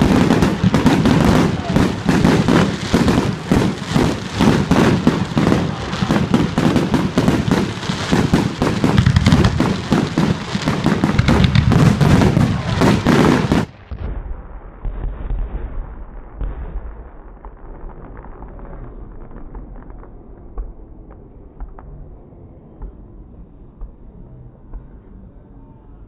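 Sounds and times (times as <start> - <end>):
firework bangs and crackles: 0.0 - 24.1
low rumble: 8.5 - 26.0.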